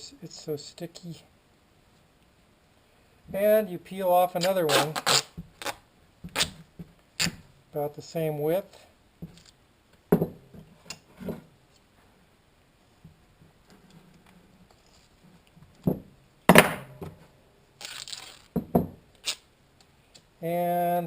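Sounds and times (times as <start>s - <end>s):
tape ripping: 4.3s - 7.4s, 17.8s - 19.5s
tape snapping and cracking: 4.4s - 6.6s, 7.2s - 7.4s, 17.8s - 19.5s.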